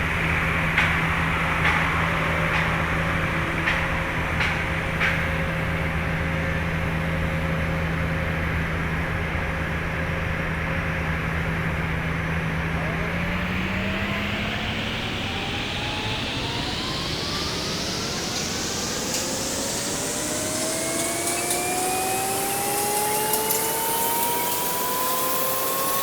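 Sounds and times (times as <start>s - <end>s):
rising whine: 10.9s - 26.0s.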